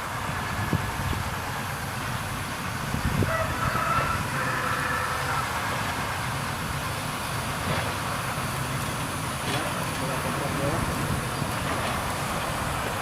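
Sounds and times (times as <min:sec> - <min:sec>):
locomotive low rumble: 0:00.0 - 0:13.0.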